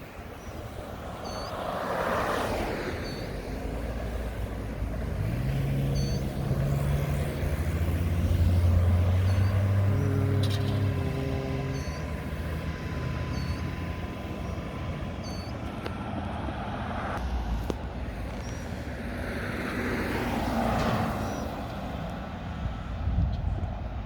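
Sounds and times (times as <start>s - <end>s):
garbage truck diesel engine: 3.3s - 18.1s.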